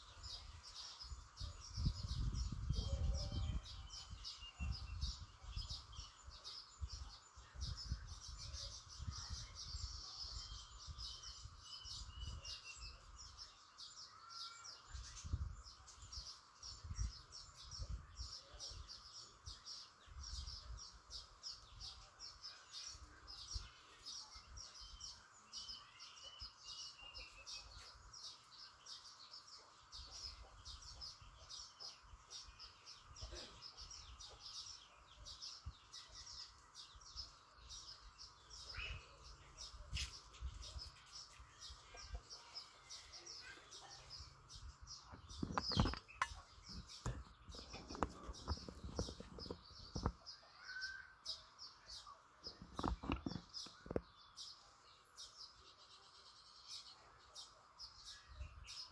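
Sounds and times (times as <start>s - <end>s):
birds chirping rapidly: 0.0s - 58.9s
low thumps on microphone: 44.6s - 50.2s, 52.5s - 54.2s.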